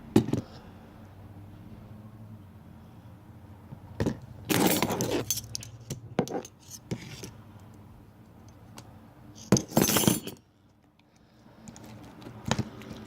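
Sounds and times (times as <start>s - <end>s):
kitchen utensils clinking: 9.4s - 10.4s.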